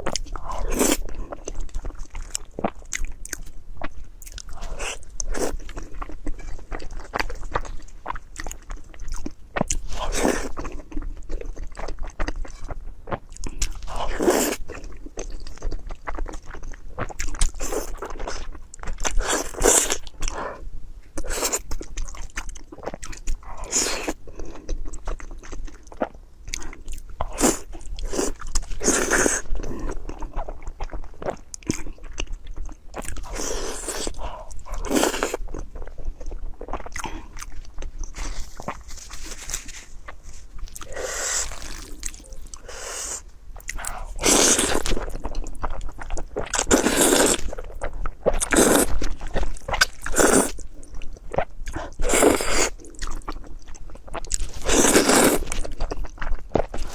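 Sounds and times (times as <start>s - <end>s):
crunchy chewing and biting: 21.2s - 56.9s
slurps: 38.0s - 45.2s, 54.3s - 55.7s.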